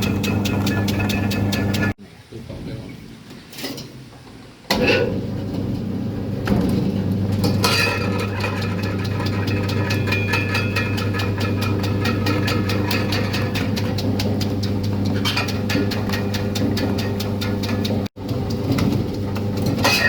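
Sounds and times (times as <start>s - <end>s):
rapid ticking of cutter: 0.0s - 2.0s, 8.3s - 18.6s
slicing machine humming: 0.0s - 2.0s, 5.4s - 20.0s.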